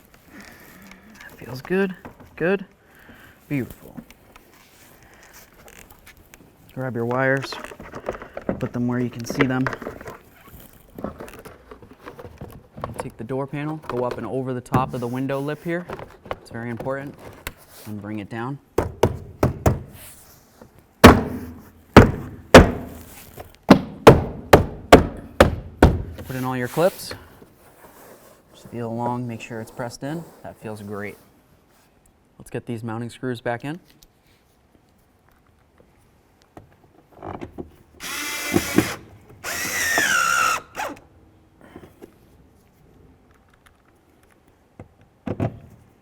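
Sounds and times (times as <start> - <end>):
hand thumping plastic door panel: 18.8 - 20.0, 21.0 - 23.1, 23.7 - 26.3
power drill motor whine: 38.0 - 41.0.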